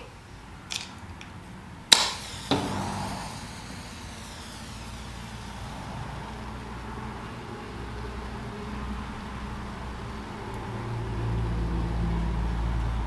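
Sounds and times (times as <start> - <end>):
match burning with rushing noise: 1.9 - 7.5.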